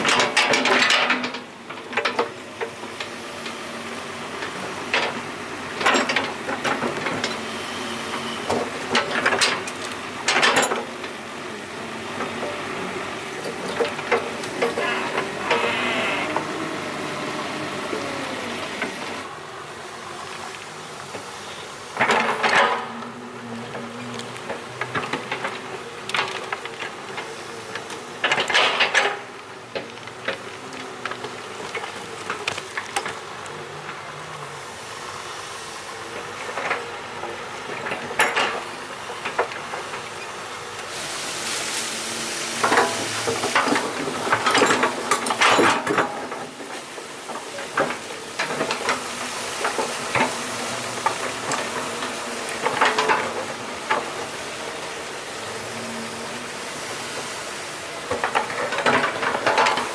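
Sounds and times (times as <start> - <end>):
sizzling hiss: 40.8 - 44.3.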